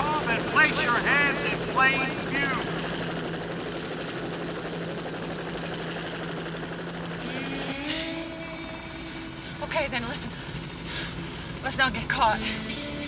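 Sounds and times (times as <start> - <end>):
helicopter rotor noise: 0.0 - 13.0
rising held tone: 7.0 - 9.6.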